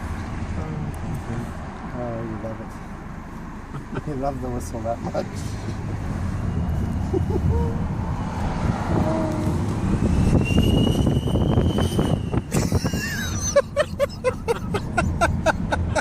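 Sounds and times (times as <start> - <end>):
car engine running: 0.0 - 10.2, 12.5 - 16.0
turbo whistle: 10.1 - 12.5.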